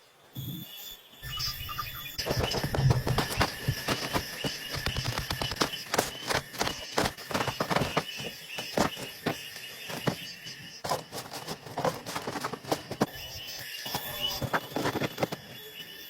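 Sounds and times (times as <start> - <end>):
insects chirring: 0.1 - 16.0
irregular knocks and clicks: 2.2 - 13.2.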